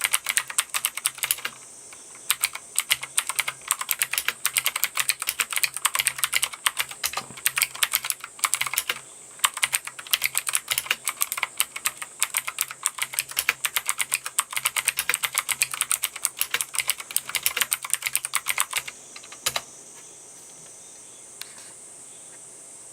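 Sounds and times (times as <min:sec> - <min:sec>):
fast clicky keyboard typing: 0:00.0 - 0:19.7
faint high hiss: 0:00.0 - 0:22.9.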